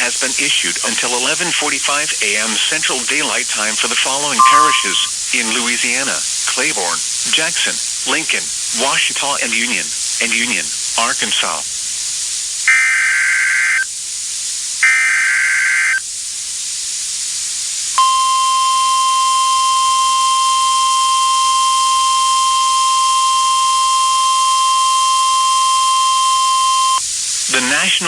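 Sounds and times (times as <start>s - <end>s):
steady alarm tone: 4.4s - 5.1s, 18.0s - 27.0s
buzzy digital bursts: 21.2s - 27.0s.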